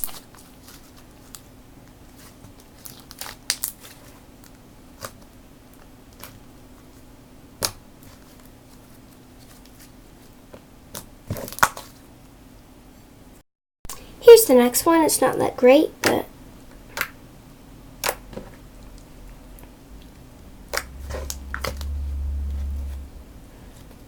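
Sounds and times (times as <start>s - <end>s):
faint steady hum: 0.0s - 24.0s
slime crackling and clicking: 18.0s - 18.3s.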